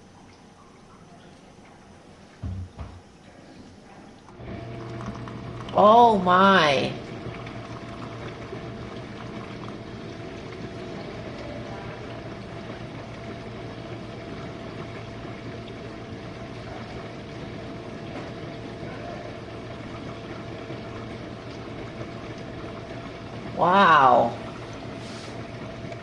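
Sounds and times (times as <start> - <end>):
dishwasher motor hum: 0.0 - 26.0
water swishing: 7.0 - 26.0.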